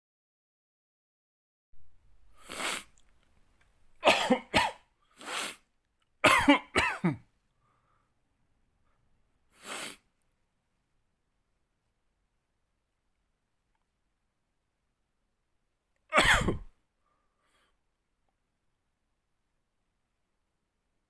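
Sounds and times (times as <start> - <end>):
man coughing: 4.0 - 4.8, 6.2 - 7.2, 16.1 - 16.7.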